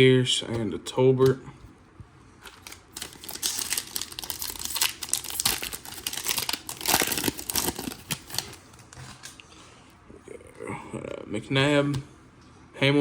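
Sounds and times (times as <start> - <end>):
plastic wrapper crinkling: 2.4 - 9.4.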